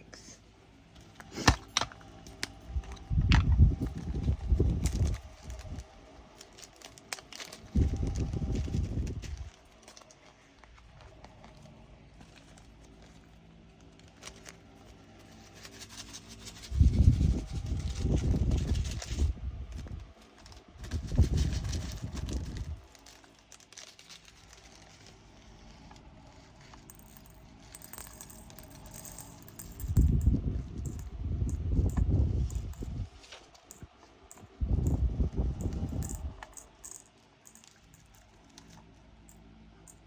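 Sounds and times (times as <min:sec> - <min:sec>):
plastic bags crinkling: 0:03.7 - 0:14.8, 0:19.9 - 0:26.1.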